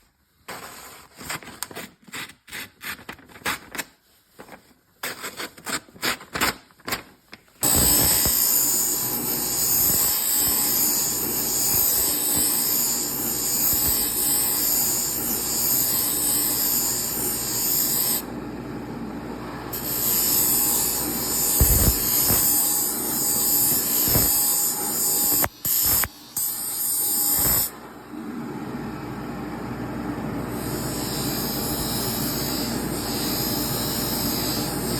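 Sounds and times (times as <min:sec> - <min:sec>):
abrasive grinding on a blade: 0:07.6 - 0:18.3, 0:19.7 - 0:27.8.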